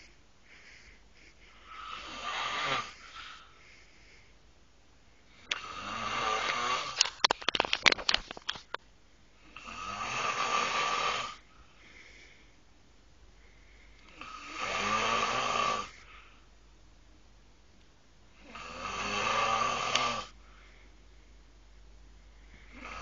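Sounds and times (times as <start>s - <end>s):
man snoring loudly: 1.7s - 3.0s, 5.6s - 7.0s, 9.5s - 11.4s, 14.2s - 16.0s, 18.4s - 20.4s.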